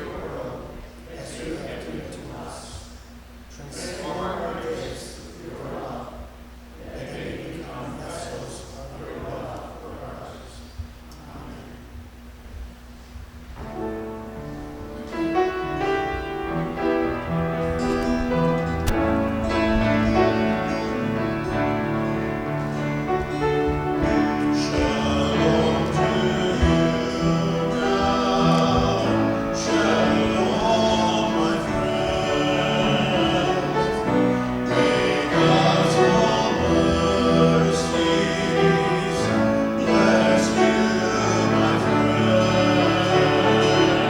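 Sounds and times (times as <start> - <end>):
voices singing: 0.0 - 12.2, 15.0 - 44.0
piano playing: 13.6 - 44.0.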